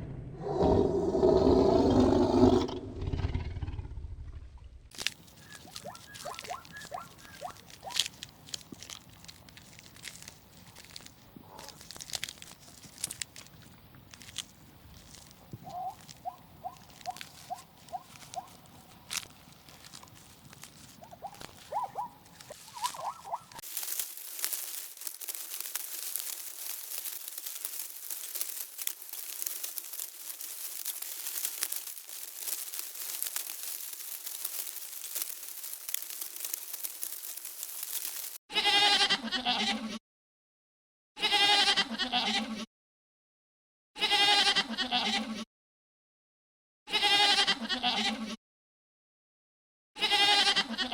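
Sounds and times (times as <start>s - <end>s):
steady hiss with crackling: 4.9s - 38.4s
pulsed calls with clicks: 5.3s - 8.1s, 21.0s - 23.6s
livestock bleating: 38.5s - 40.0s, 41.2s - 42.7s, 44.0s - 45.4s, 46.9s - 48.4s, 50.0s - 50.9s.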